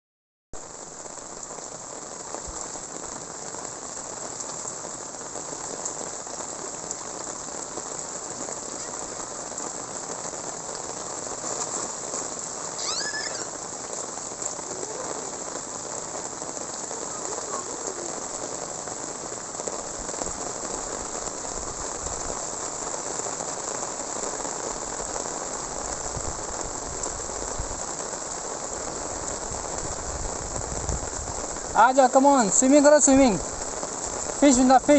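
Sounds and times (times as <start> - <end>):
steady rain falling: 0.6 - 34.9
short high falling call: 12.7 - 13.6.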